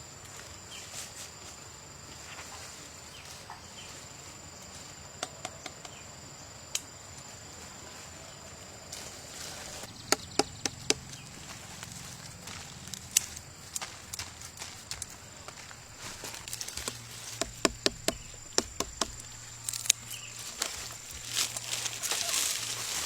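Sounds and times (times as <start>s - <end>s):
crickets shrilling: 0.0s - 23.0s
loud knocks: 16.8s - 19.4s.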